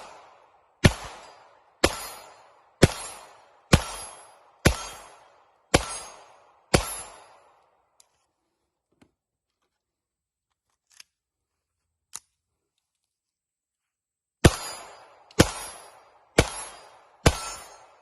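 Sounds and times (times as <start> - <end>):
pistol shots echoing: 0.0 - 7.7, 14.4 - 18.0.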